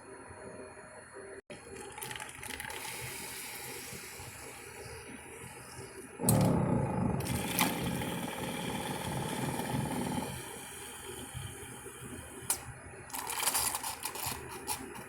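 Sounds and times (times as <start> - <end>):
coffee machine pump running: 1.5 - 15.0.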